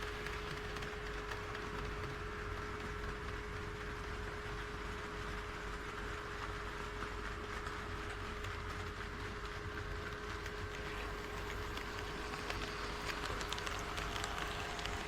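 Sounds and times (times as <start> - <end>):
wheels running on rails: 0.0 - 15.0
model train motor hum: 10.3 - 15.0.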